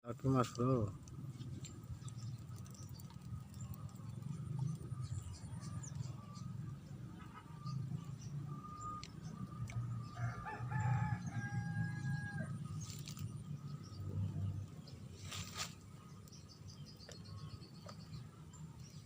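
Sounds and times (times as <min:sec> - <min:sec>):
low rumble: 0:00.9 - 0:17.7
rooster crowing: 0:10.1 - 0:12.6.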